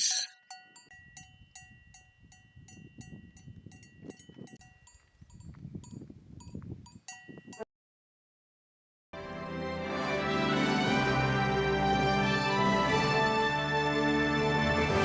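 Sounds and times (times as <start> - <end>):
cowbells clanking: 0.0 - 7.7.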